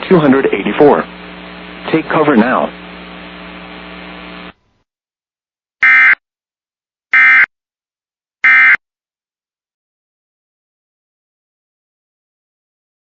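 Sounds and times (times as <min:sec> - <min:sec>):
steady hum: 0:00.0 - 0:04.5.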